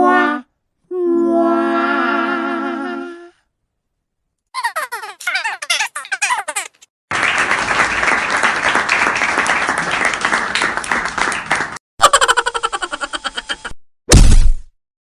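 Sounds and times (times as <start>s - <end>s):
crowd clapping: 7.1s - 11.8s.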